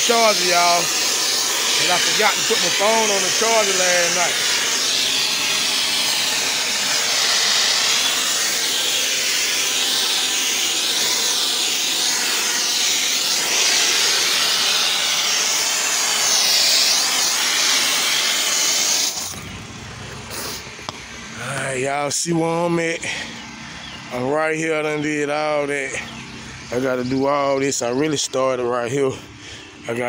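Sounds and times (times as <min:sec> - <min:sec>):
pressure washer water jet spraying: 0:00.0 - 0:22.1.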